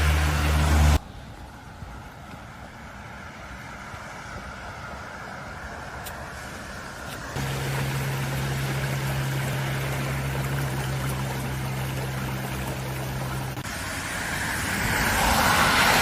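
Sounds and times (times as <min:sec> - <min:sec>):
rushing floodwater: 0:00.0 - 0:16.0
steady low hum: 0:07.4 - 0:13.7.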